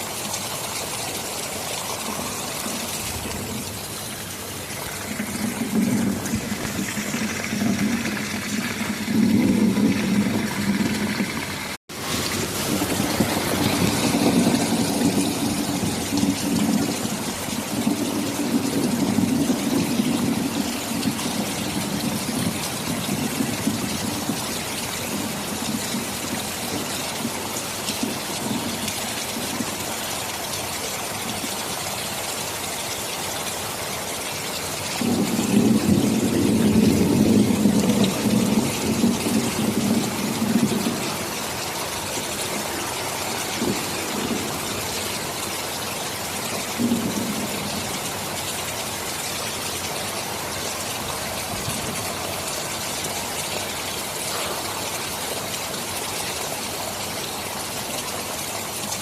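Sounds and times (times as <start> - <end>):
heavy rain: 0.0 - 59.0
rolling thunder: 2.0 - 27.4, 35.0 - 45.5, 46.3 - 48.4.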